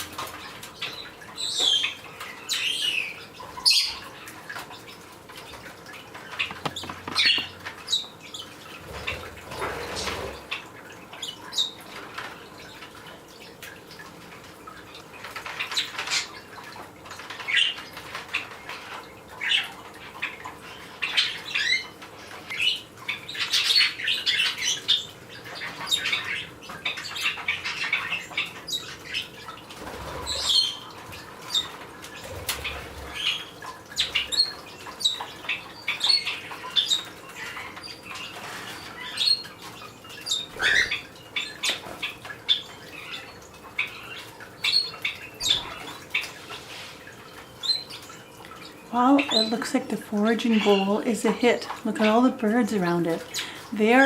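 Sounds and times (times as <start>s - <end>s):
small parrots chirping: 6.4s - 8.1s.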